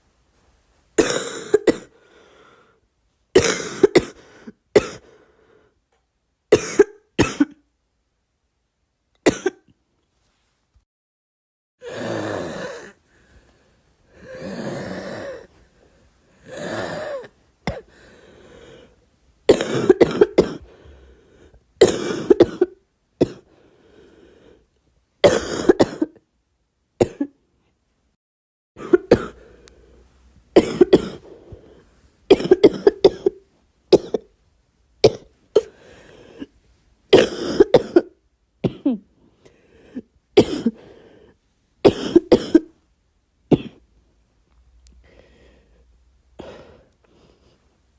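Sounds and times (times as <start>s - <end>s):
girl coughing: 1.0s - 1.9s, 3.4s - 5.0s, 6.5s - 7.6s, 9.3s - 9.7s, 19.5s - 20.7s, 21.8s - 23.5s, 25.2s - 26.2s, 27.0s - 27.4s, 28.8s - 29.4s, 30.6s - 31.3s, 32.3s - 33.4s, 37.2s - 39.1s, 40.4s - 40.8s, 41.9s - 42.7s, 43.5s - 43.8s.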